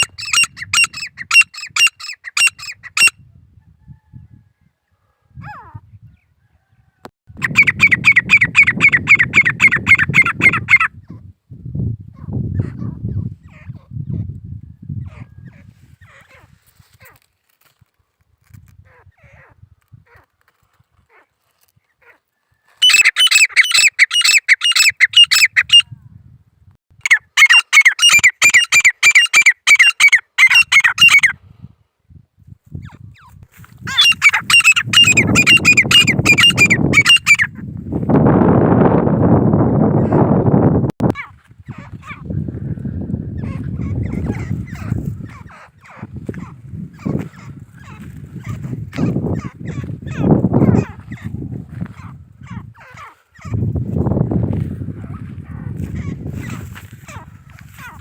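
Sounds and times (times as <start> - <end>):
bird ringing call: 7.4 - 10.9, 27.1 - 31.3, 33.9 - 37.5.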